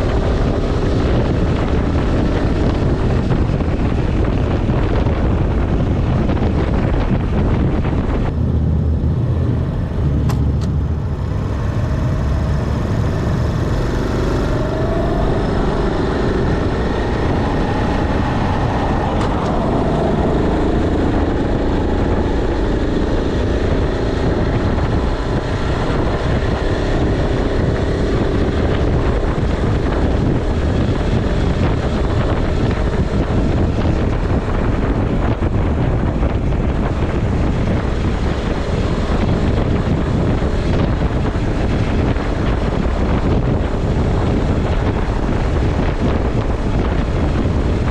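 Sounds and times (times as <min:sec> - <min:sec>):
wind rush on microphone: 0:00.0 - 0:47.9
small motorcycle engine riding: 0:11.1 - 0:47.9.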